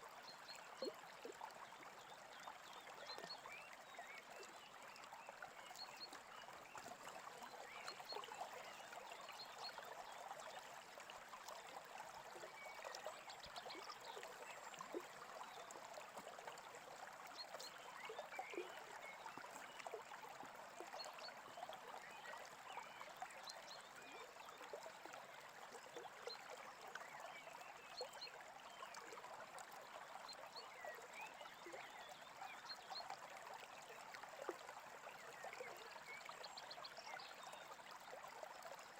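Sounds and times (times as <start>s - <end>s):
brook trickling: 0.0s - 38.9s.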